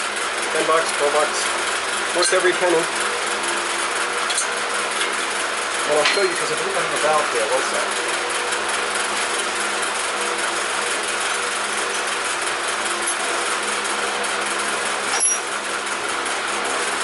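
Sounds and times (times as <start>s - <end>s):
machine whirring hum: 0.0s - 17.0s
sharp metallic clink: 15.1s - 15.5s.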